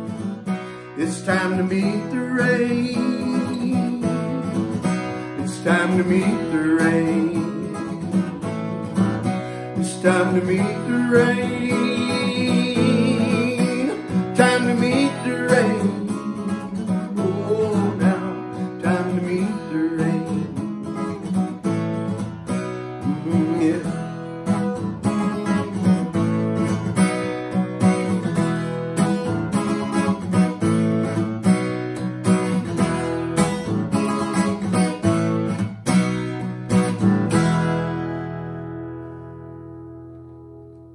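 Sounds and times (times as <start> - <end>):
strummed acoustic guitar: 0.0 - 40.9.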